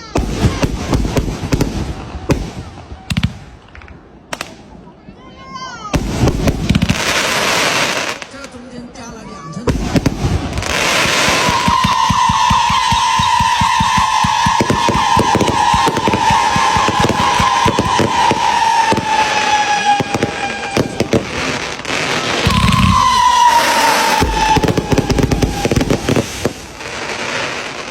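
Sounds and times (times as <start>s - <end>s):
fireworks crackling: 0.0s - 4.8s, 5.8s - 27.9s
falling firework whistle: 10.0s - 27.9s.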